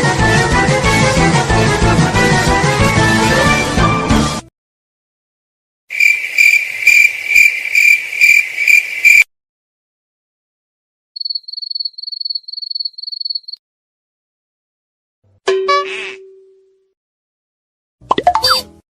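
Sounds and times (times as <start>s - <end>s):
loud shrill cricket chirping: 5.9s - 9.3s, 11.2s - 13.6s
thin high cricket chirping: 5.9s - 9.3s, 11.2s - 13.6s.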